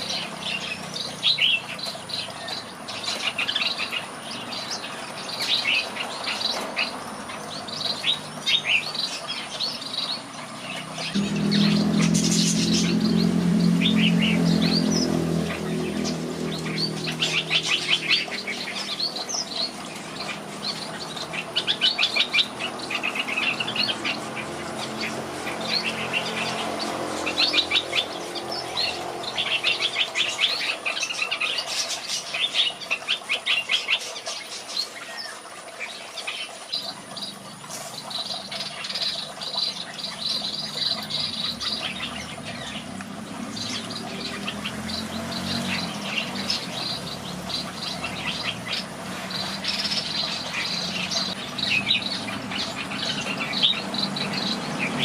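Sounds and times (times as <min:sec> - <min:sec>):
bulbuls chirping and singing: 0:00.0 - 0:55.0
low steady hum: 0:11.0 - 0:21.6.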